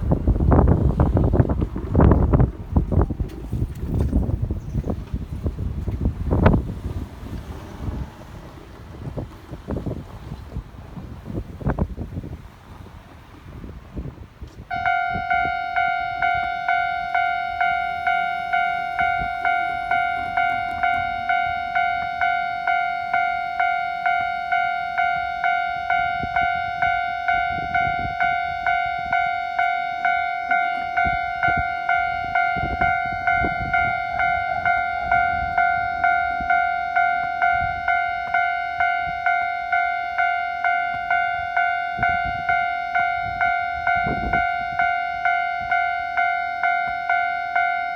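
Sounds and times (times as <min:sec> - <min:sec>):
electronic crossing bell ringing: 0:14.7 - 0:47.9.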